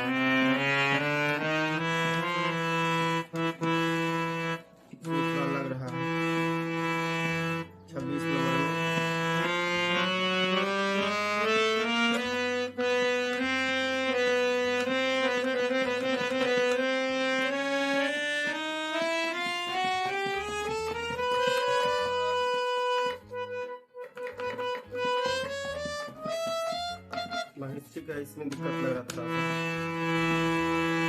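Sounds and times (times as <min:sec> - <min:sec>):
harmonium notes: 0:00.0 - 0:31.0.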